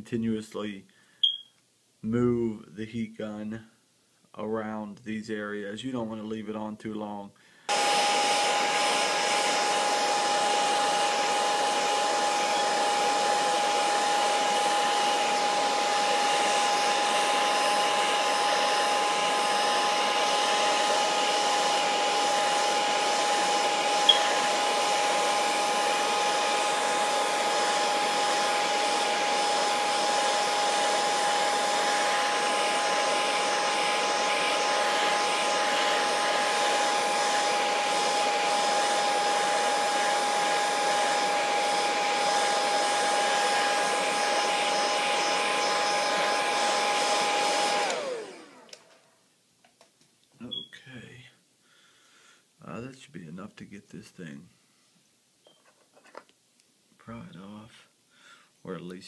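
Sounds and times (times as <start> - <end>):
heat gun blowing: 7.7 - 49.0.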